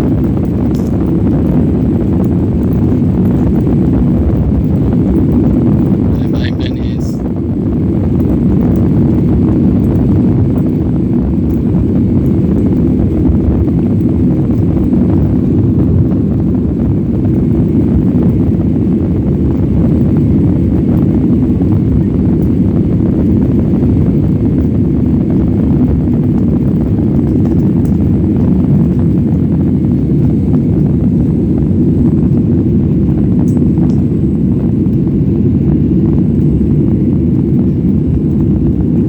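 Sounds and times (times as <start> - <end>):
aircraft cabin engine rumble: 0.0 - 39.0.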